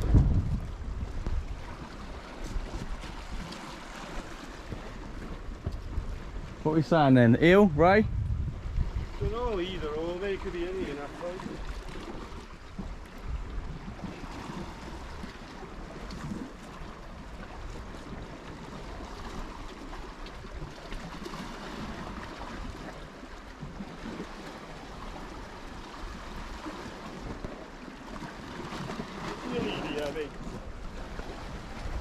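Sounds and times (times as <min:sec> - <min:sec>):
low wind rumble: 0:00.0 - 0:20.7
sea water washing: 0:00.0 - 0:32.0.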